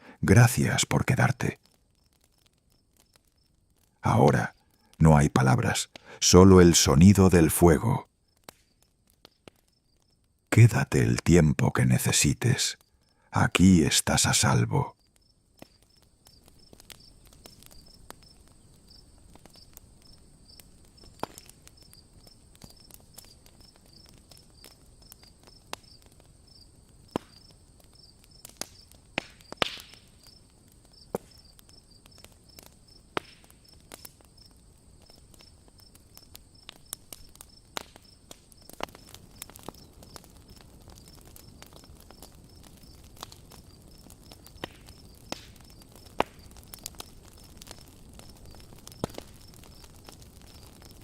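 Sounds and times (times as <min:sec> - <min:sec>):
campfire crackling: 0:00.0 - 0:51.0
crickets chirping: 0:15.0 - 0:28.9, 0:30.0 - 0:51.0.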